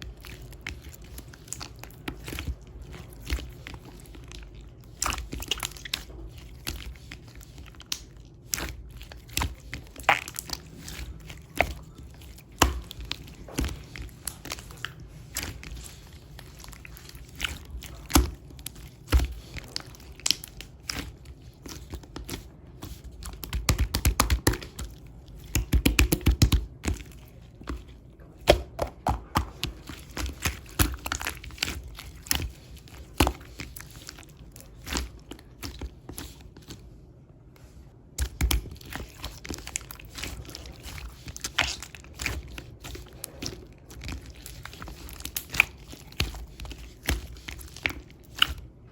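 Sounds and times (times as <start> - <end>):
crinkling and crackling: 0.0 - 48.9.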